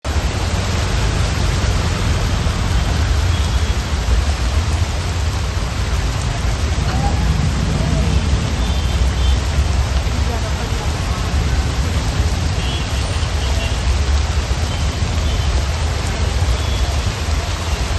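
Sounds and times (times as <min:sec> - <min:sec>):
heavy rain pouring: 0:00.0 - 0:17.9
deep steady rumble: 0:05.1 - 0:12.6.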